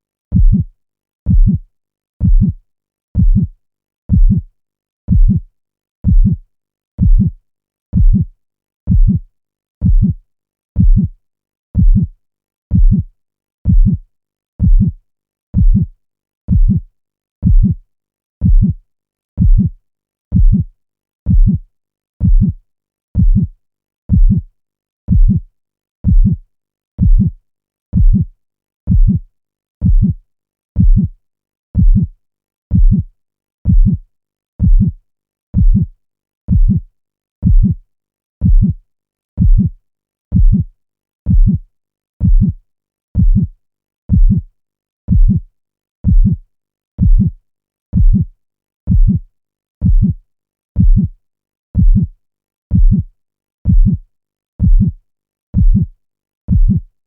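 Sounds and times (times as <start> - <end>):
heartbeat thumps: 0.3 - 0.7, 1.3 - 1.6, 2.2 - 2.6, 3.2 - 3.5, 4.1 - 4.4, 5.1 - 5.4, 6.0 - 6.4, 7.0 - 7.3, 8.0 - 8.2, 8.9 - 9.2, 9.8 - 10.2, 10.8 - 11.1, 11.8 - 12.1, 12.7 - 13.0, 13.7 - 14.0, 14.6 - 15.0, 15.6 - 15.9, 16.5 - 16.8, 17.4 - 17.8, 18.4 - 18.8, 19.4 - 19.7, 20.3 - 20.7, 21.3 - 21.6, 22.2 - 22.6, 23.2 - 23.5, 24.1 - 24.4, 25.1 - 25.4, 26.0 - 26.4, 27.0 - 27.3, 28.0 - 28.2, 28.9 - 29.2, 29.8 - 30.2, 30.8 - 31.1, 31.8 - 32.1, 32.7 - 33.1, 33.7 - 34.0, 34.6 - 35.0, 35.6 - 35.9, 36.5 - 36.8, 37.4 - 37.8, 38.4 - 38.7, 39.4 - 39.7, 40.3 - 40.6, 41.3 - 41.6, 42.2 - 42.6, 43.2 - 43.5, 44.1 - 44.4, 45.1 - 45.4, 46.0 - 46.4, 47.0 - 47.3, 48.0 - 48.2, 48.9 - 49.2, 49.8 - 50.1, 50.8 - 51.1, 51.8 - 52.1, 52.7 - 53.0, 53.7 - 54.0, 54.6 - 54.9, 55.6 - 55.8, 56.5 - 56.8.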